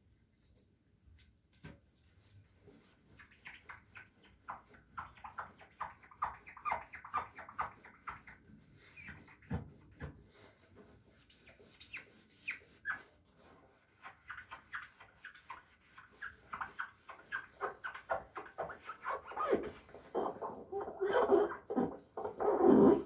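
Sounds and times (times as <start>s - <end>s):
high squeaks from scrubbing: 11.5s - 23.0s.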